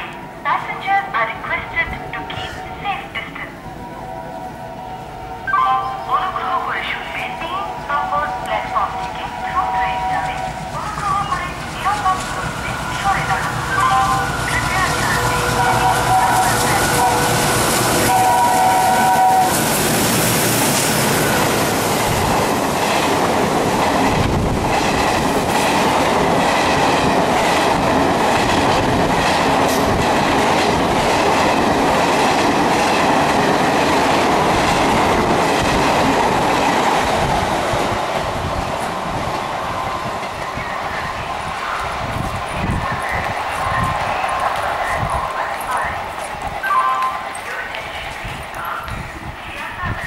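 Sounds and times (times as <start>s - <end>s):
train wheels clattering: 7.2s - 50.0s
locomotive horn: 11.9s - 19.8s.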